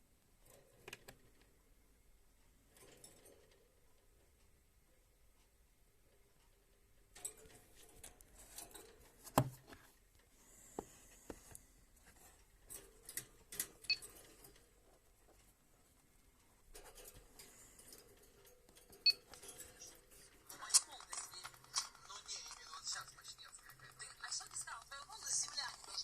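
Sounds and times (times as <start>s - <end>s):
faint clicks and ticks: 0.0s - 26.0s.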